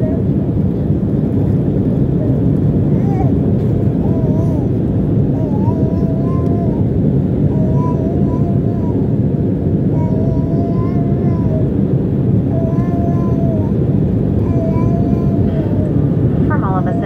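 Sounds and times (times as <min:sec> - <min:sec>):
airliner cabin engine rumble: 0:00.0 - 0:17.0.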